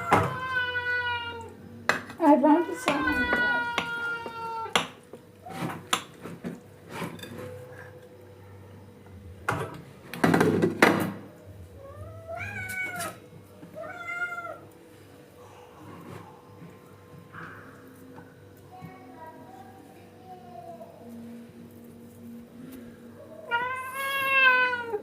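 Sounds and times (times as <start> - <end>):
cat meowing: 2.5 - 4.7, 23.5 - 25.0.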